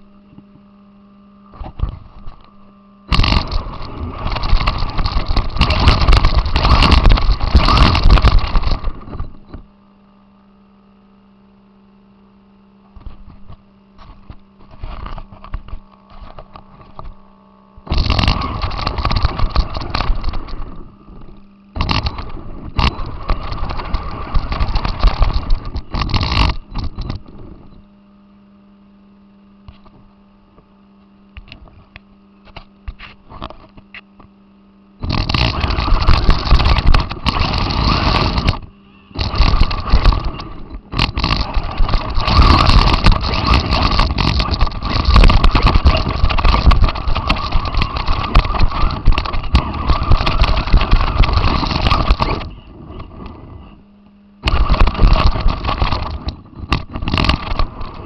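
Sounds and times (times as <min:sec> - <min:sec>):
crackles: 0:00.0 - 0:10.8, 0:12.0 - 0:27.9, 0:35.0 - 0:58.0
electrical hum: 0:00.0 - 0:58.0
rc car rattling drive noise: 0:01.4 - 0:09.8, 0:12.8 - 0:27.8, 0:35.0 - 0:53.8, 0:54.4 - 0:58.0.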